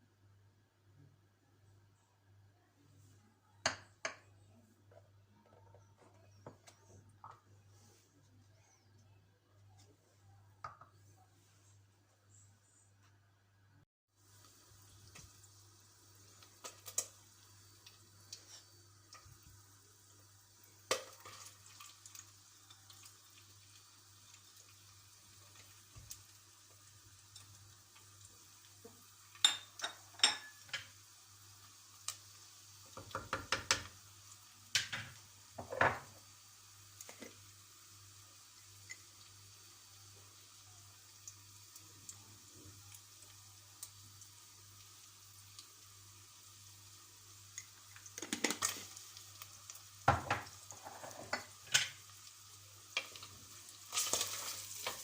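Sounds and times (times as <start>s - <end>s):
dishes and utensils clinking: 29.4s - 30.9s, 50.1s - 52.0s
dishes clattering: 29.4s - 30.9s, 50.1s - 52.0s.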